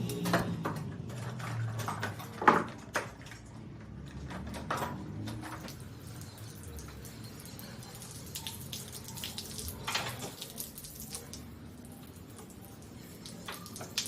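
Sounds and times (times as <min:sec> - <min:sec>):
water running and dripping: 0:05.0 - 0:14.0.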